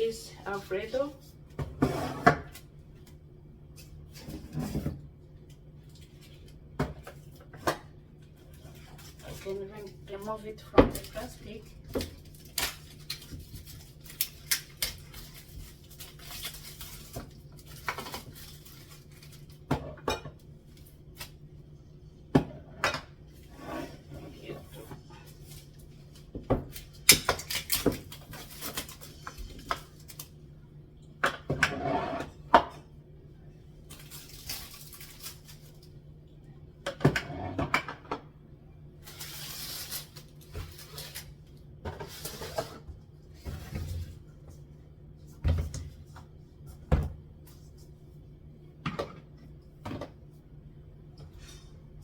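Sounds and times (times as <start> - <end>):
packaging rustling: 12.2 - 19.6, 33.9 - 35.9.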